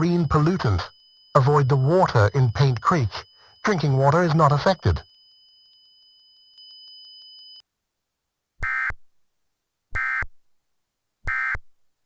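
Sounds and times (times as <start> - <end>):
digital data tone bursts: 0.0 - 5.1.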